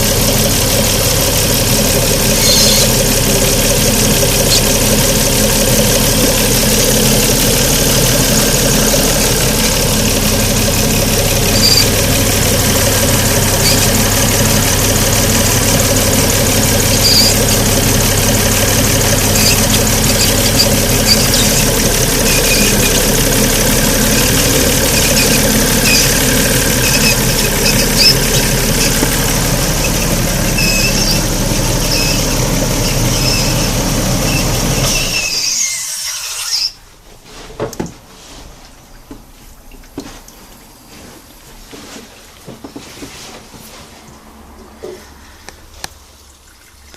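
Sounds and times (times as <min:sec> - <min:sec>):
car engine running: 0:00.0 - 0:35.2
high-pitched squeal: 0:01.6 - 0:14.8, 0:16.6 - 0:36.8.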